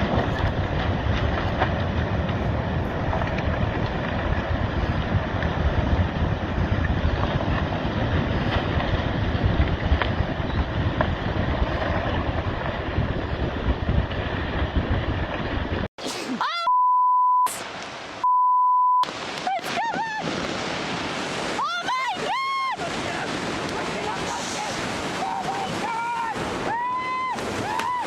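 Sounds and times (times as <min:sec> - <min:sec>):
wind buffeting microphone: 0:00.0 - 0:15.9, 0:19.8 - 0:28.0
high-pitched censor beeps: 0:16.5 - 0:17.6, 0:18.2 - 0:19.0.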